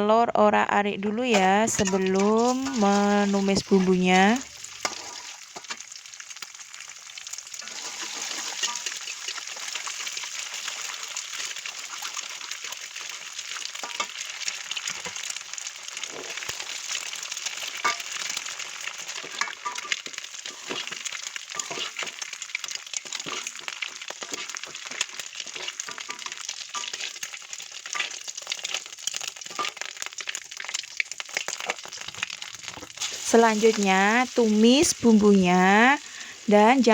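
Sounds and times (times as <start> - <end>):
eggs sizzling in oil: 1.0 - 36.9
spatula clicking and scraping: 19.0 - 29.9.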